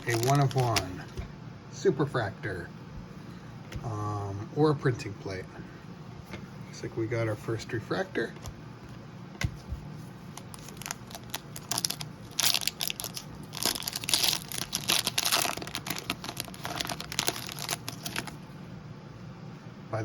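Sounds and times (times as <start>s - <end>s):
card pack wrappers crinkling: 0.0s - 1.1s, 10.2s - 18.4s.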